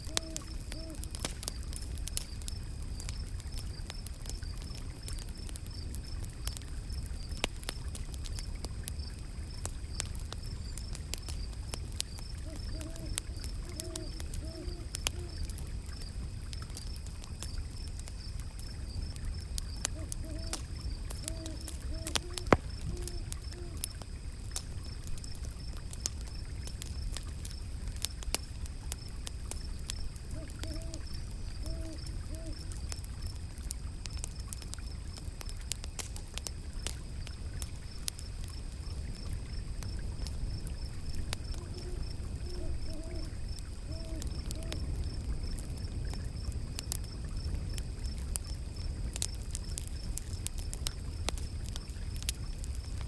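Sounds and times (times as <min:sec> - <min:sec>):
owl hooting: 0:00.0 - 0:01.1, 0:12.4 - 0:15.5, 0:19.9 - 0:23.8, 0:30.3 - 0:32.7, 0:41.6 - 0:44.9
wood fire crackling and popping: 0:00.0 - 0:53.0.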